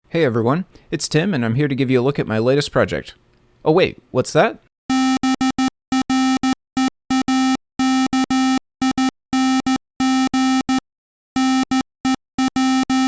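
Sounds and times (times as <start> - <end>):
morse code beeps: 4.9 - 10.8, 11.4 - 13.0.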